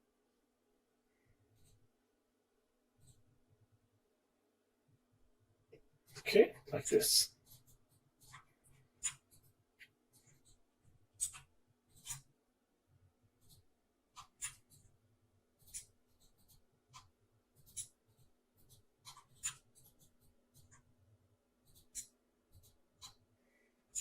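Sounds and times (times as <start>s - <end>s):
computer mouse clicks and taps: 3.0s - 3.2s, 7.4s - 12.3s, 13.4s - 14.9s, 15.6s - 20.9s, 21.6s - 23.2s.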